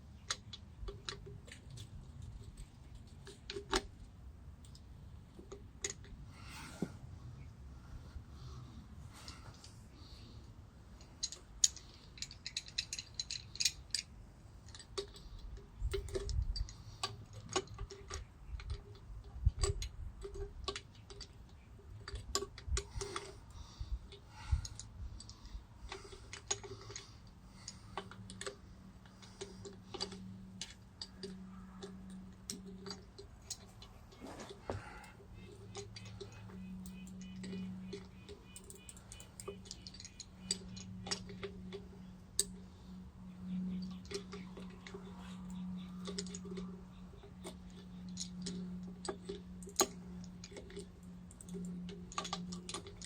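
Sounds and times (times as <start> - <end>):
light metal clicks and clinks: 10.9 - 53.0.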